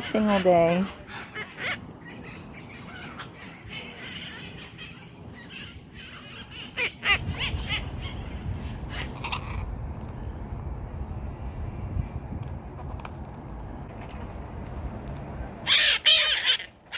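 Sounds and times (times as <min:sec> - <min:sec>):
parakeets squawking: 0:00.0 - 0:09.7, 0:15.6 - 0:16.9
low rumble: 0:07.0 - 0:15.7.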